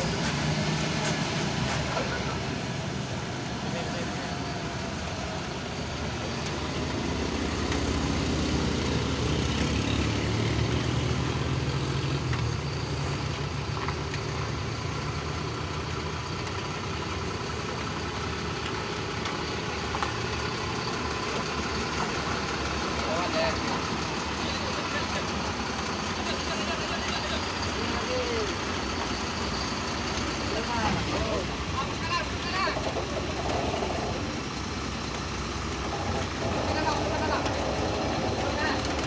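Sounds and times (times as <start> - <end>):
vehicle engine droning: 0.0 - 39.0.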